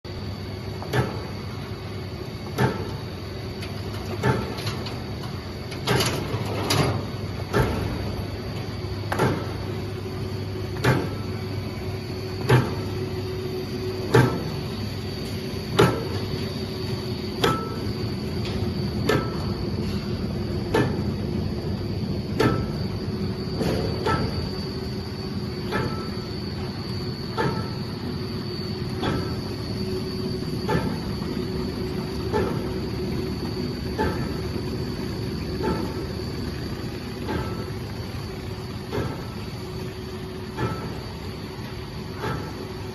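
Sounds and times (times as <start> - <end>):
machine humming with high whine: 0.0 - 42.9
machine sharp clunks: 0.9 - 1.4, 2.5 - 3.1, 4.2 - 8.2, 9.1 - 9.8, 10.7 - 11.4, 12.4 - 13.0, 14.1 - 14.6, 15.7 - 16.4, 17.4 - 20.1, 20.7 - 21.2, 22.3 - 22.9, 23.5 - 24.6, 25.6 - 26.7, 27.3 - 27.9, 29.0 - 29.5, 30.6 - 31.2, 32.3 - 32.6.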